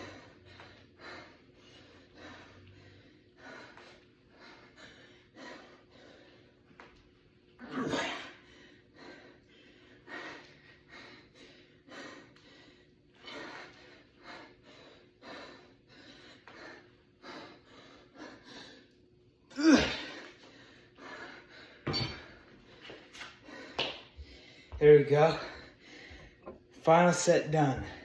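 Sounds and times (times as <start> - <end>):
man breathing hard: 0.0 - 6.9, 8.0 - 26.7
man grunting: 19.6 - 20.2.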